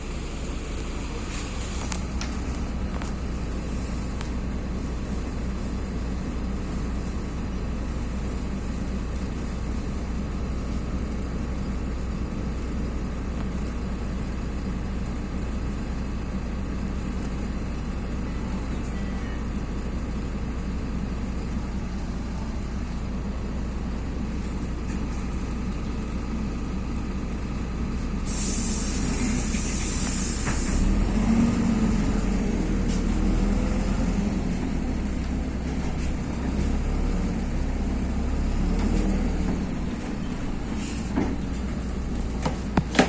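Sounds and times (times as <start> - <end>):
bus diesel engine: 0.0 - 43.0
compressed air hiss: 28.2 - 30.9.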